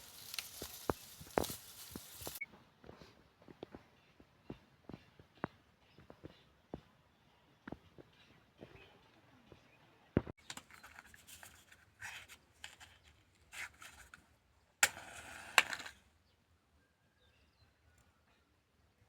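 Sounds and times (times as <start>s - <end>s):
close rustling handling sounds: 0.0s - 2.4s, 10.4s - 14.3s.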